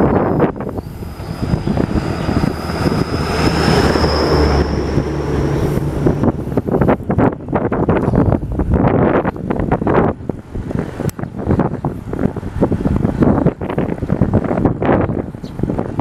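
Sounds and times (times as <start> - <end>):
thin high whine: 0.0 - 7.1
low engine hum: 0.0 - 16.0
wind buffeting microphone: 0.0 - 16.0.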